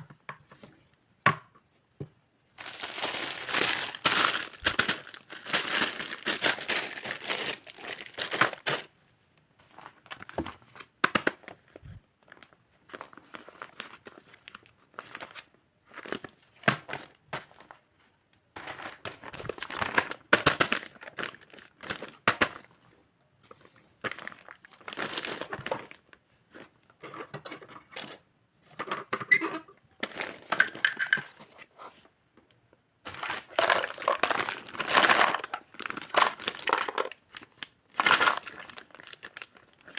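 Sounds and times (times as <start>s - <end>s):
plastic packaging crinkling: 2.6s - 8.9s, 9.7s - 17.8s, 18.6s - 22.6s, 24.0s - 26.2s, 30.0s - 31.5s, 33.1s - 39.9s.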